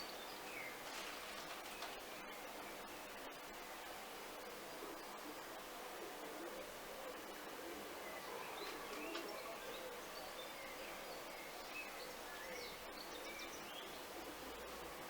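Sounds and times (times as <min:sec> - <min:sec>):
background hiss: 0:00.0 - 0:15.0.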